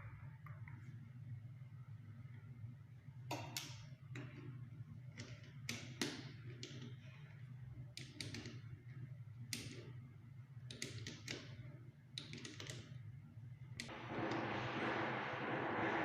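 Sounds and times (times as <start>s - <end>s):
steady low hum: 12.8s - 16.0s.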